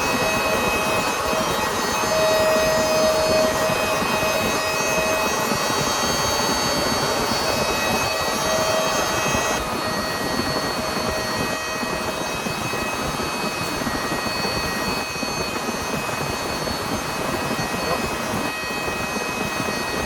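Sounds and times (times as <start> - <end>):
faint high-pitched tones: 0.0 - 20.0.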